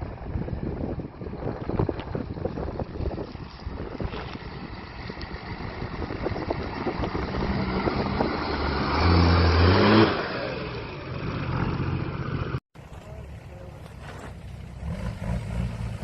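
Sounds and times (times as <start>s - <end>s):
engine revving: 5.0s - 12.6s, 14.1s - 16.0s.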